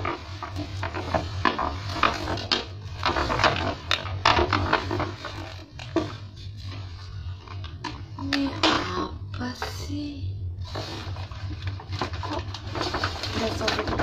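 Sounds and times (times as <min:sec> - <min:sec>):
wrapping paper crinkling and tearing: 0:00.0 - 0:07.7, 0:10.6 - 0:14.0.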